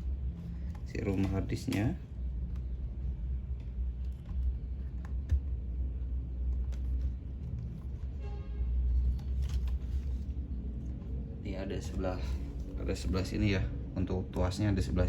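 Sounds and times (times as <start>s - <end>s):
low steady rumble: 0.0s - 15.0s
laptop parts clicking and tapping: 0.6s - 7.7s.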